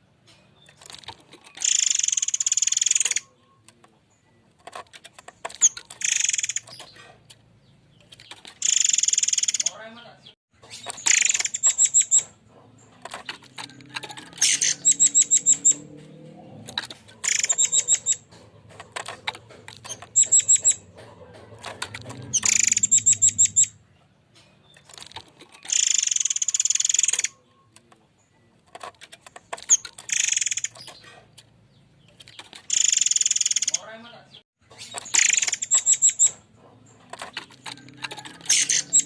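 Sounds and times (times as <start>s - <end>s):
bird rapid high-pitched notes: 1.6s - 3.4s, 5.6s - 6.9s, 8.6s - 9.8s, 10.7s - 12.4s, 14.3s - 15.9s, 17.2s - 18.4s, 19.8s - 20.9s, 22.2s - 23.8s, 25.6s - 27.5s, 29.7s - 31.0s, 34.8s - 36.4s.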